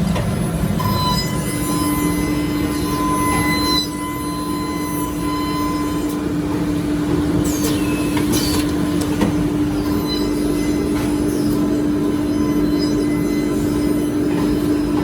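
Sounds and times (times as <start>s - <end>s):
milling machine humming: 4.4s - 15.0s.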